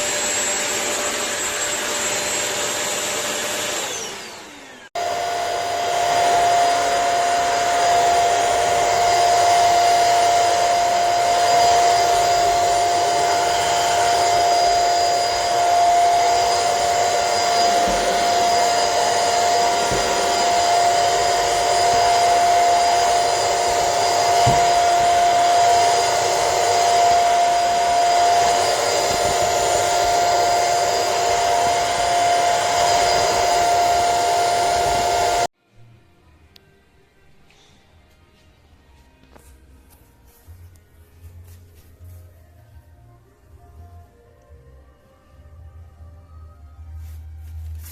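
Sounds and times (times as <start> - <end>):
floor cleaner motor whine: 0.0 - 35.5.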